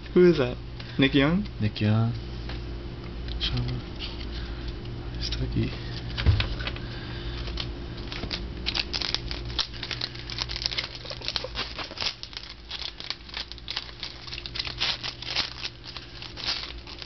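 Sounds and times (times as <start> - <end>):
low steady hum: 0.0 - 17.0
card pack wrapper crinkling: 7.3 - 17.0
cards being handled: 7.4 - 17.0.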